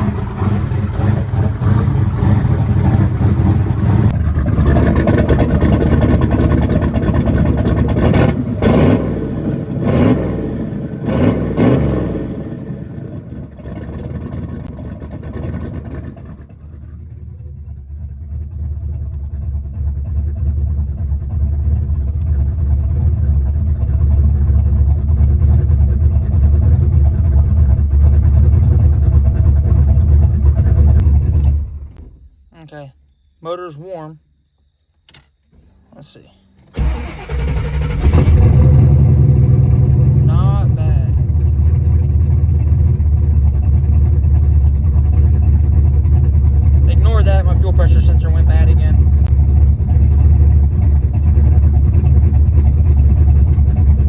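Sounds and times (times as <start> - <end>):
car engine revving and idling: 0.0 - 32.0, 36.5 - 54.0.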